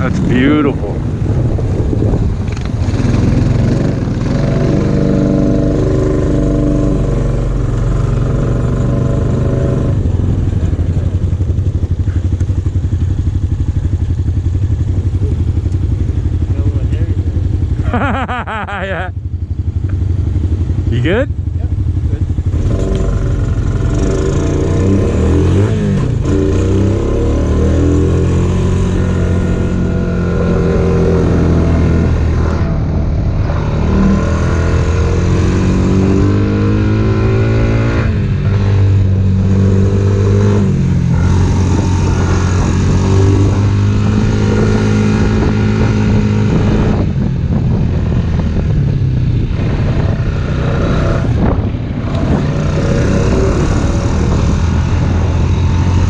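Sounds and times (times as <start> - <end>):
off-road vehicle engine revving: 0.0 - 12.4, 20.6 - 56.0.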